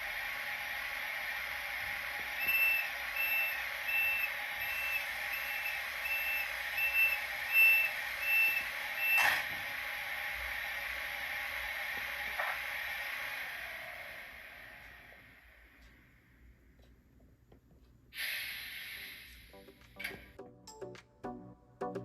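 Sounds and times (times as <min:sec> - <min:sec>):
steady hiss: 0:18.1 - 0:19.9.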